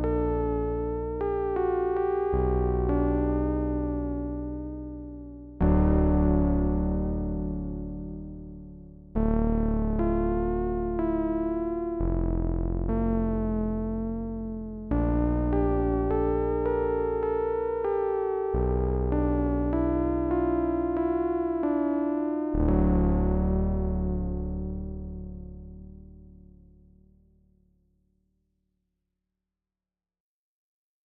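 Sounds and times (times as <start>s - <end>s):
synthesizer melody: 0.0s - 4.6s, 9.7s - 25.7s
synthesizer chords: 0.0s - 26.5s.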